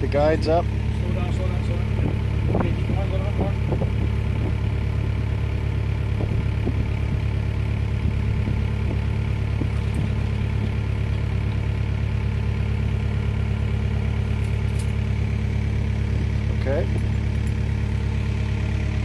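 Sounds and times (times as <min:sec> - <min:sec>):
forklift engine idling: 0:00.0 - 0:19.0.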